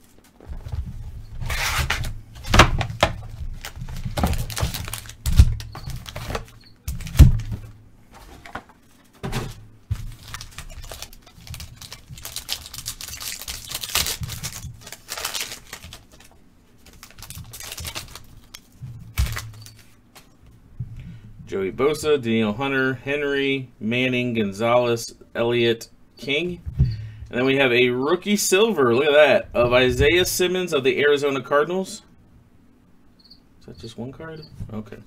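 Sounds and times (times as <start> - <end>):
wrappers tearing and crinkling: 1.4 - 7.5, 9.9 - 19.9.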